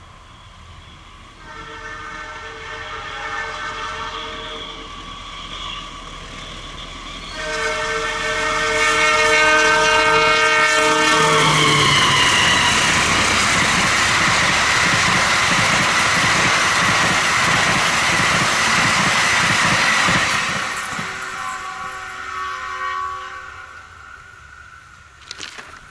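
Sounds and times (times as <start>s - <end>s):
train rushing past: 0.0s - 25.2s
train horn blast: 1.4s - 4.9s, 7.3s - 13.6s, 20.9s - 24.4s.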